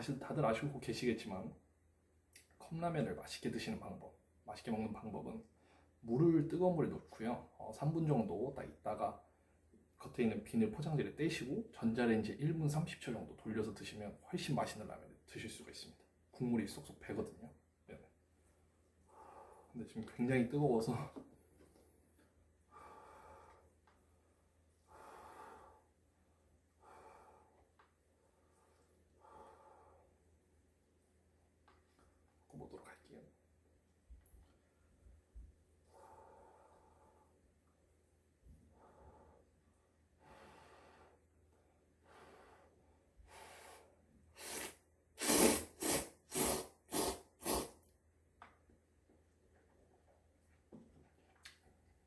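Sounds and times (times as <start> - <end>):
breathy blowing on food: 43.3 - 47.8
loud noodle slurps: 44.4 - 47.8.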